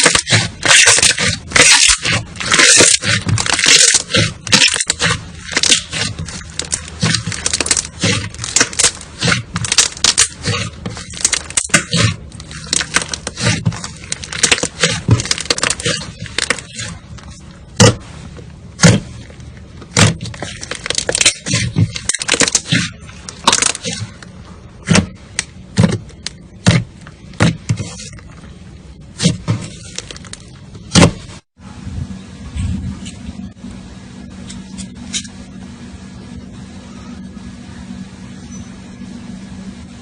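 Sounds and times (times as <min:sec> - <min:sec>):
slime crackling and popping: 0:00.0 - 0:18.2, 0:18.8 - 0:28.4, 0:29.2 - 0:31.2.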